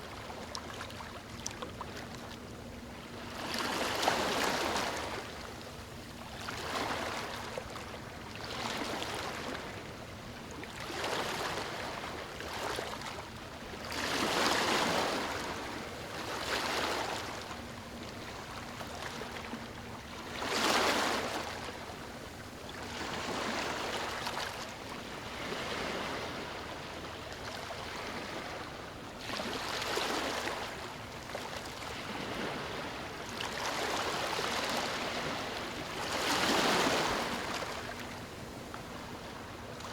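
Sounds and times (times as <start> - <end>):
ocean waves washing ashore: 8.4 - 39.9.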